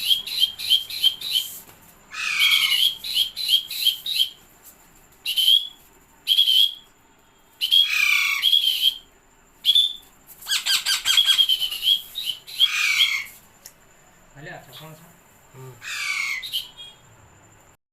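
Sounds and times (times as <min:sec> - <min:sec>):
parrot squawking and chirping: 0:02.1 - 0:04.4, 0:07.6 - 0:09.0, 0:09.8 - 0:13.4, 0:15.8 - 0:17.0.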